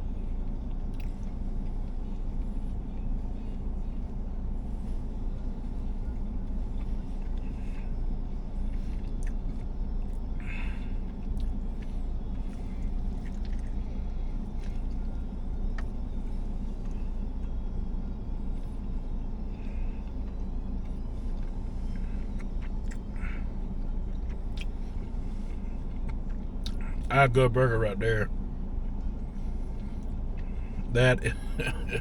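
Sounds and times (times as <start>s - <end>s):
steady low rumble: 0.0s - 32.0s
person chewing food: 0.2s - 27.1s.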